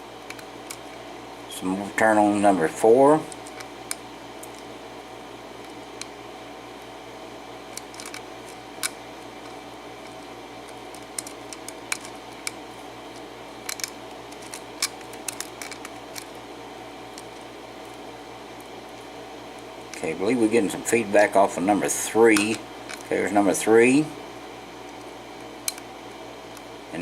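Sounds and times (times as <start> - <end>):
steady low hum: 0.0 - 27.0.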